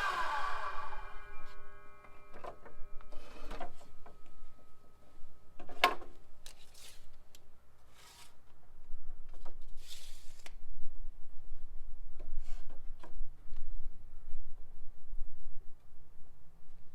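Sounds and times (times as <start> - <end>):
power saw blade tone: 0.0 - 4.6.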